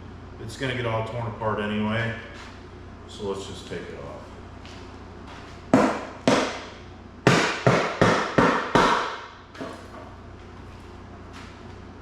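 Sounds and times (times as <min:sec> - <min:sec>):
impact wrench hammering: 0:05.7 - 0:09.8.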